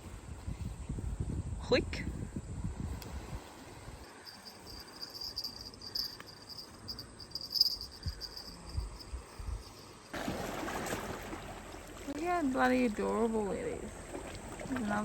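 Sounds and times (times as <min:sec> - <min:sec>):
insect trilling: 0:04.0 - 0:10.2.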